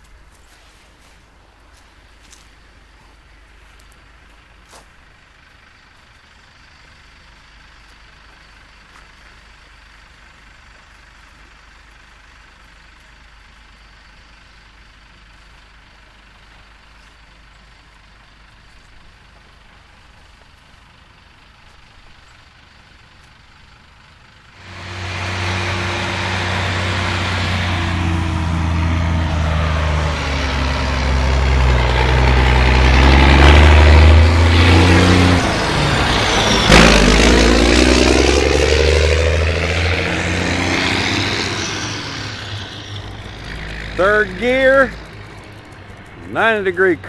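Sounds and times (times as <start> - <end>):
vehicle engine humming: 24.6 - 47.0.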